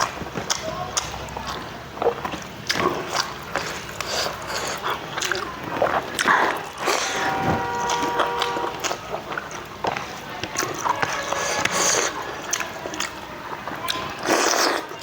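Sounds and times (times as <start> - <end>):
chewing and mouth smacks: 0.0 - 7.1, 8.8 - 15.0.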